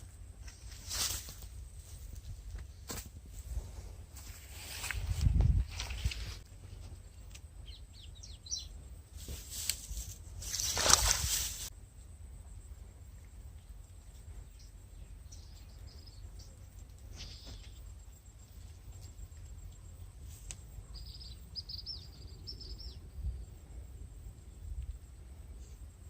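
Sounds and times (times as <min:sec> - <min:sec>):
small bird chirping: 0:07.6 - 0:08.8, 0:13.9 - 0:18.2, 0:19.0 - 0:23.6.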